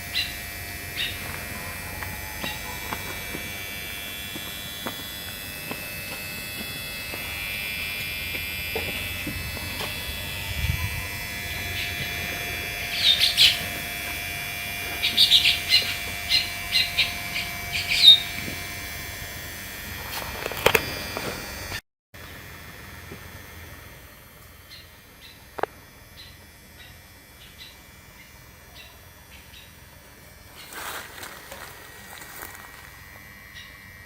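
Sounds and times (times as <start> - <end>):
birds chirping: 0.0 - 4.2, 9.0 - 18.6
high-pitched background whine: 0.0 - 34.0.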